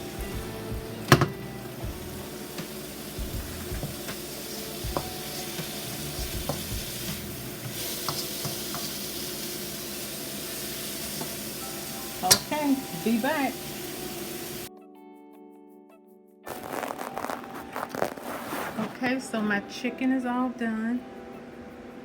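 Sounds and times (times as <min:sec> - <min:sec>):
food sizzling: 0:00.0 - 0:14.7.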